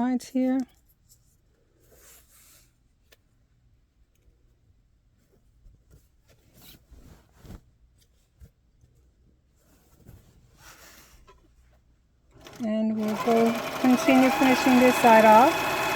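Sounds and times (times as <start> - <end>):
fabric rustling and rubbing: 0.9 - 12.2.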